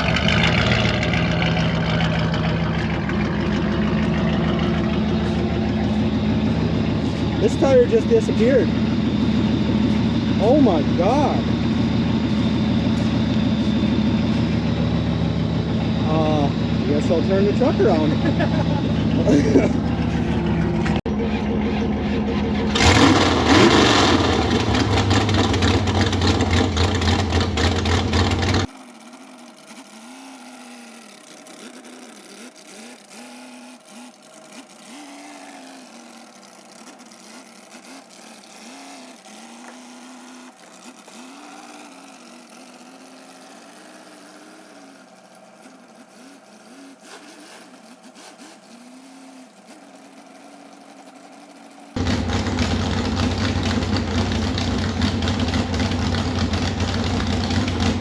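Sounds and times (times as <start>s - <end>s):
thin wavering drone: 0.0s - 23.5s
truck engine revving: 0.0s - 58.0s.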